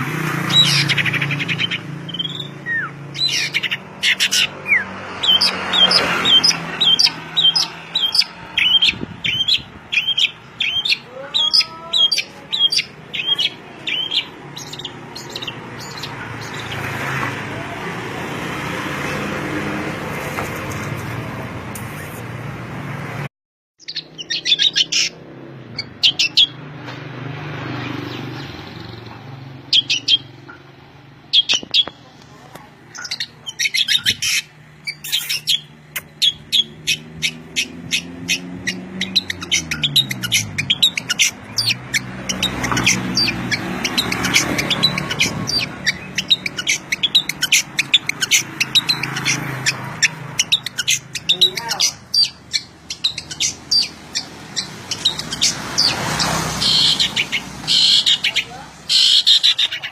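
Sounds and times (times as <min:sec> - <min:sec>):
songbird chirping and twittering: 0:00.0 - 0:18.6, 0:23.8 - 0:59.9.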